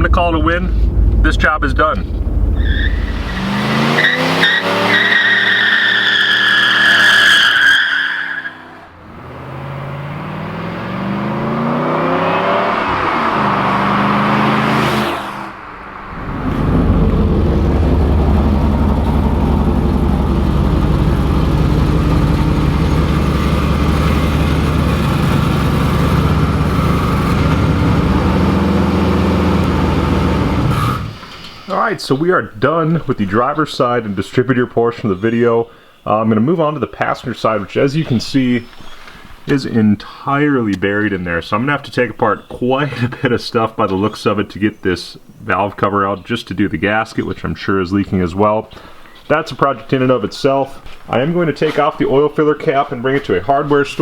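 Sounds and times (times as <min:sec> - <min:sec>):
car engine accelerating hard: 0:00.0 - 0:07.2, 0:08.6 - 0:31.3
tires squealing: 0:02.4 - 0:31.8.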